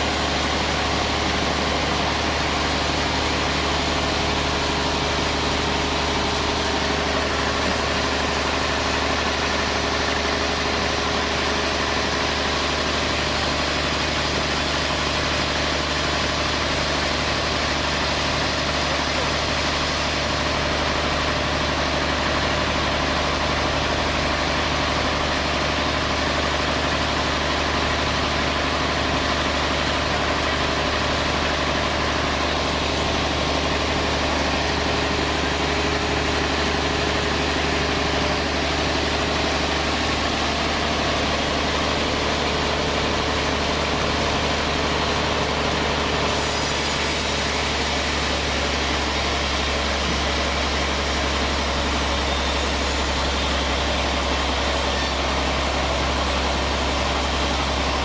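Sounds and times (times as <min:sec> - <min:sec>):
band saw machinery humming: 0:30.3 - 0:58.0.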